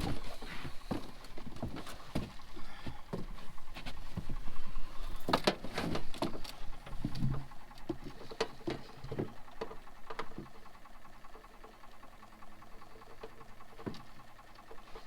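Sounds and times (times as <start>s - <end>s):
taps clicks and knocks in a boat: 0.0s - 15.0s.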